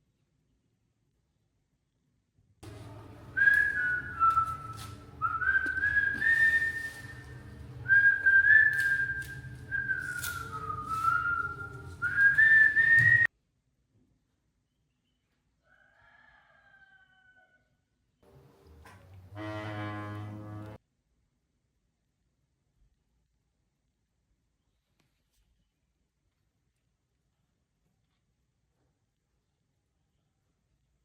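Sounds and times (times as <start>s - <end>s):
low steady hum: 2.6s - 13.3s
person whistling a tune: 3.3s - 13.3s.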